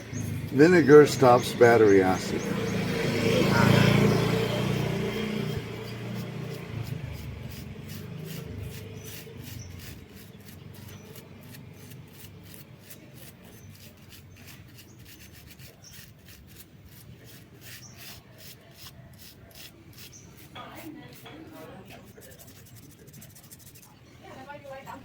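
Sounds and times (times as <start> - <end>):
low vehicle rumble: 0.0 - 12.6.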